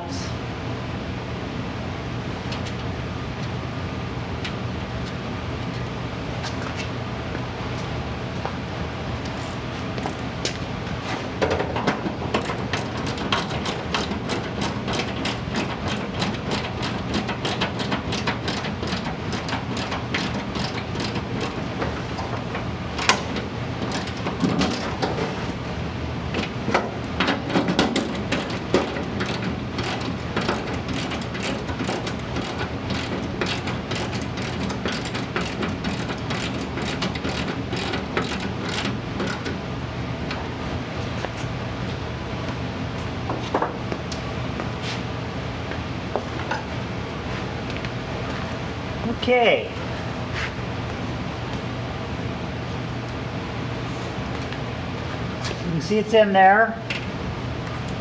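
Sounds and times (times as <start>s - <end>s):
steady low hum: 0.0s - 58.0s
ratchet wrench clicking: 12.4s - 21.6s, 27.9s - 39.5s.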